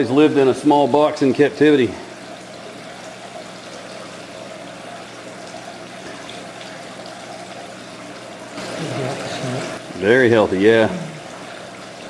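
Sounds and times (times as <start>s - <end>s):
faint steady hum: 0.0s - 12.0s
water flowing and trickling: 0.0s - 12.0s.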